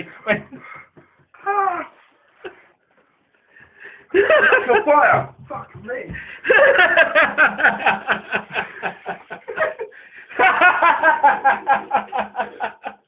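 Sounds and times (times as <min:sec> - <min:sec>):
person laughing hard: 0:06.5 - 0:13.0.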